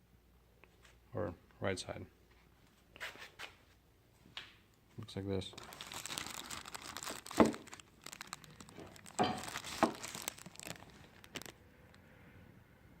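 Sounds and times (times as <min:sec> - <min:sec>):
rustling and handling noise: 0:04.9 - 0:12.0.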